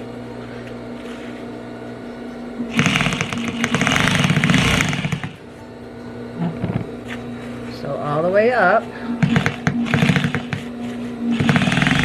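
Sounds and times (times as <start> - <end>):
low steady hum: 0.0 - 12.0
sewing machine whirring and clicking: 2.7 - 5.4, 9.2 - 10.7, 11.3 - 12.0.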